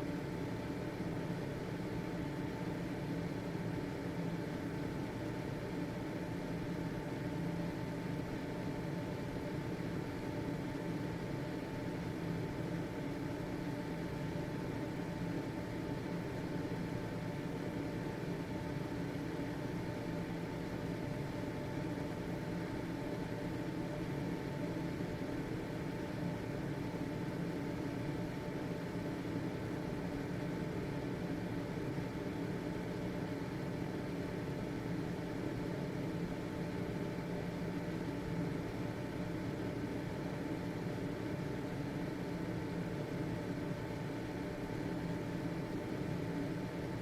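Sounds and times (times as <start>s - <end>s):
fan motor hum: 0.0s - 47.0s.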